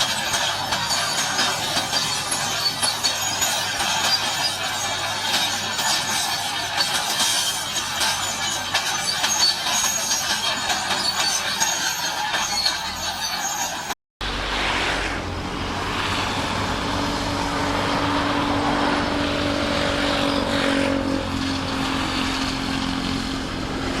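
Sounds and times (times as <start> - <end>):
bulldozer diesel engine running: 0.0 - 24.0.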